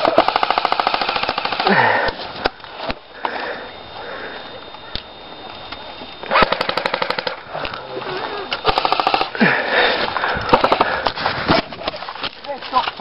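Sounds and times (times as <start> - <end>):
airsoft guns firing bursts: 0.0 - 1.8, 6.3 - 7.4, 8.6 - 9.4, 10.5 - 11.0.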